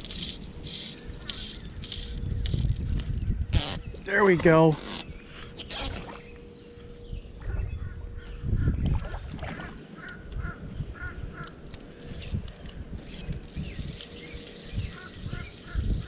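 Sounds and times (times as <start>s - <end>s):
low rumble and thumps: 2.1s - 11.5s
bird calling harsh notes: 13.1s - 16.0s.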